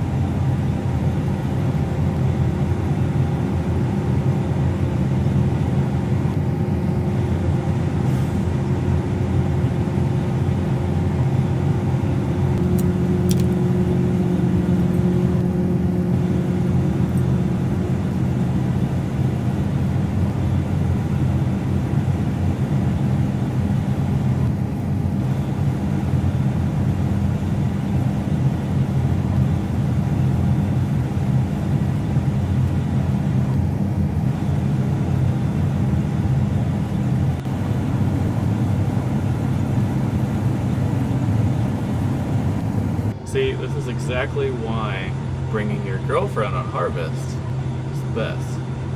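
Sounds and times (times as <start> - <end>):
combine harvester engine drone: 0.0 - 48.9
higher hum: 3.7 - 21.6, 36.9 - 48.9.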